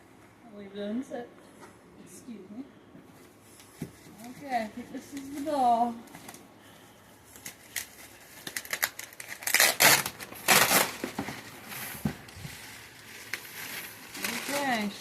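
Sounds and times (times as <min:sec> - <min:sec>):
wrapping crinkling and rustling: 0:03.1 - 0:15.0.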